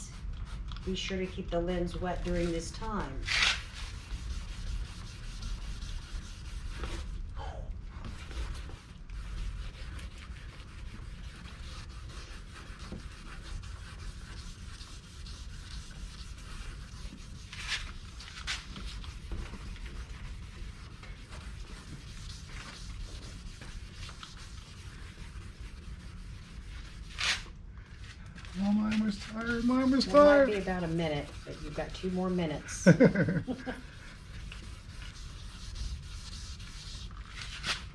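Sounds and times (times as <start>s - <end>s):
wet sanding plastic by hand: 0.0s - 7.2s, 8.1s - 27.5s, 28.4s - 37.9s.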